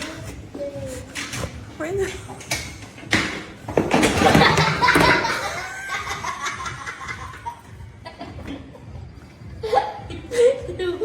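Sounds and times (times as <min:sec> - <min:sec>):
people laughing hard: 0:04.1 - 0:08.8, 0:09.6 - 0:11.0.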